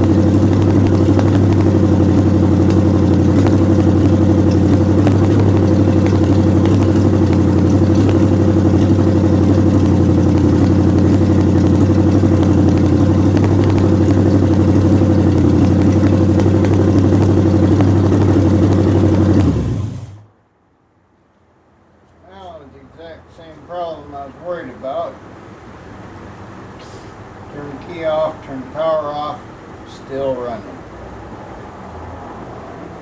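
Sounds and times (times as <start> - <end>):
car engine running: 0.0 - 20.3.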